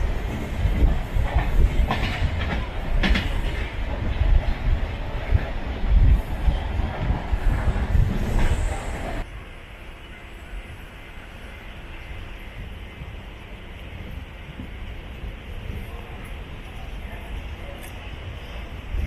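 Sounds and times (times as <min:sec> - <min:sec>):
train wheels clacking: 0:00.0 - 0:09.2
train rumbling along track: 0:00.0 - 0:19.0.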